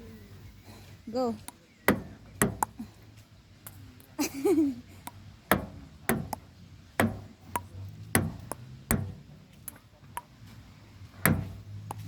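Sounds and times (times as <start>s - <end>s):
ping-pong ball tapping paddles and table: 1.4s - 2.8s, 5.0s - 9.2s, 11.3s - 12.0s.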